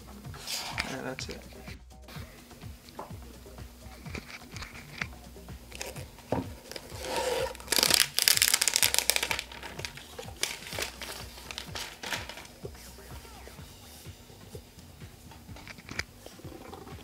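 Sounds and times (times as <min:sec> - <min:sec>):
plastic packaging crinkling: 0:05.7 - 0:12.6.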